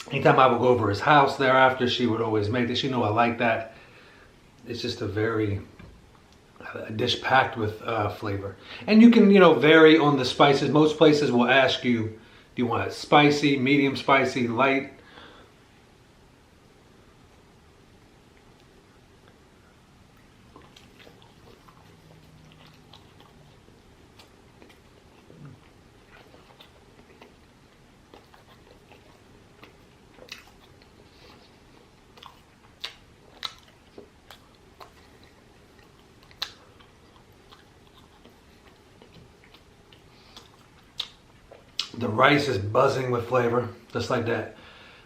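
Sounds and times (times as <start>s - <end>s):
chewing and biting food: 20.1s - 42.0s
wet mouth clicks and smacks: 32.1s - 42.0s.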